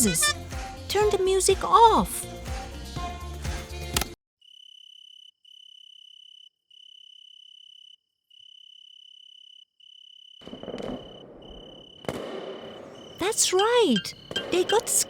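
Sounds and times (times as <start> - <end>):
cricket chirping: 4.4 - 15.0.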